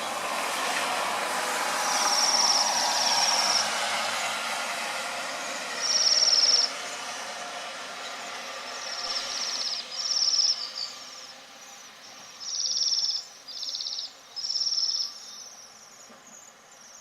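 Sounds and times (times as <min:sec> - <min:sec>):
songbird trilling: 0:05.8 - 0:06.7, 0:08.7 - 0:16.0.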